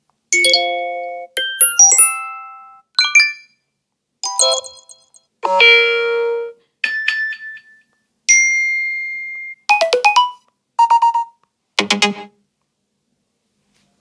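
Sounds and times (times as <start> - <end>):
phone alert tones: 9.7 - 12.2.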